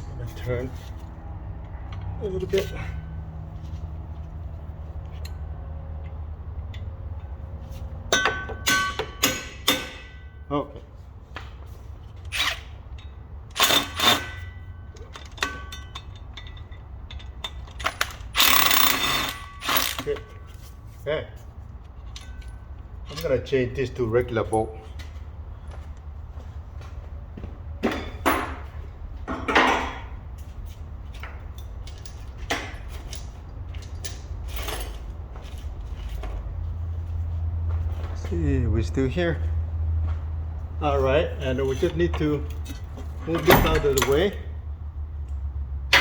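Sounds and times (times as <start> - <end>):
steady low hum: 0.0 - 46.0
metal tools clanking on metal: 8.1 - 10.6, 12.2 - 20.9, 21.9 - 25.2, 27.8 - 30.3, 31.0 - 36.5, 40.9 - 44.5.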